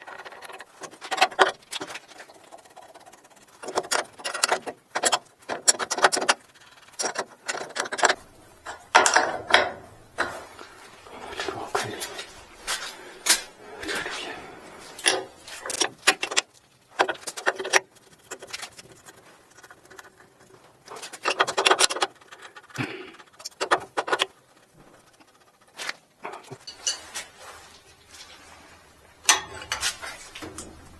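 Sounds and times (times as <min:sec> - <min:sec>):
metal parts clinking and tapping: 0:03.6 - 0:10.6, 0:14.9 - 0:24.4, 0:25.0 - 0:27.3, 0:29.2 - 0:30.9.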